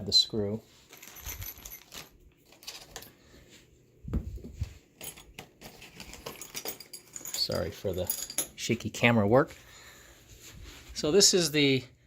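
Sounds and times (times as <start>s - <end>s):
metal screws clinking: 0.9s - 3.1s, 5.0s - 8.7s.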